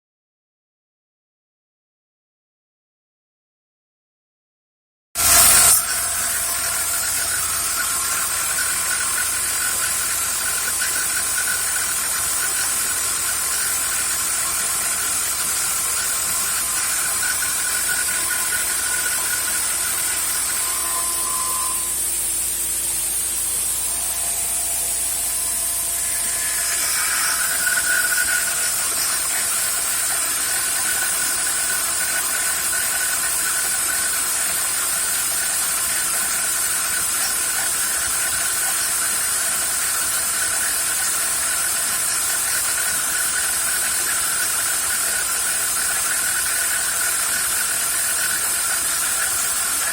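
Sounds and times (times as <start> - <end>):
high hiss: 5.2 - 34.2
machining whine: 5.2 - 49.9.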